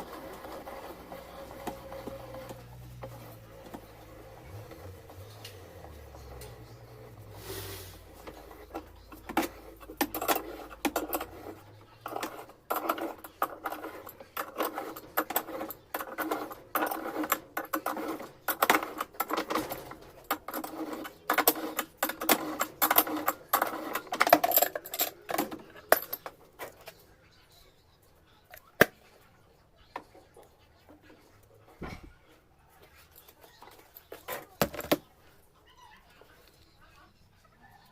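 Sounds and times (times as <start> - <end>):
metal tools clinking and rattling: 8.0 - 26.9.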